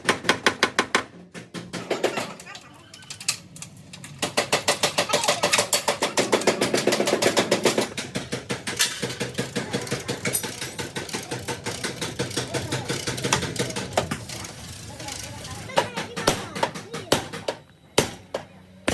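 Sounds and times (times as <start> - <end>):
rapid tapping on sheet metal: 0.0 - 2.5, 4.2 - 14.3, 15.7 - 18.9.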